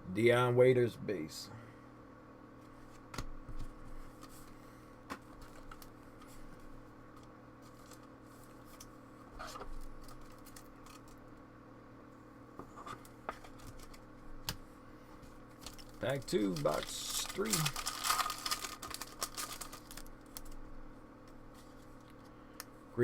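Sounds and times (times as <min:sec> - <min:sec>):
low electrical hum: 0:00.0 - 0:23.0
card packs rustling: 0:15.5 - 0:20.6.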